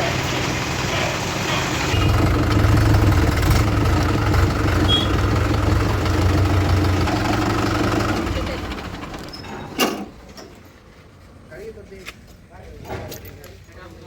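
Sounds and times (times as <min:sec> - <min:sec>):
heavy diesel engine rumbling: 0:00.0 - 0:10.5.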